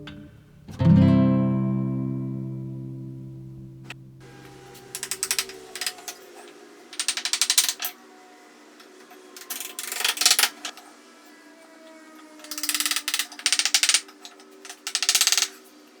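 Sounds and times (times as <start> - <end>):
faint tune: 0.0 - 6.4
rapid clicking: 4.8 - 6.2, 7.0 - 7.9.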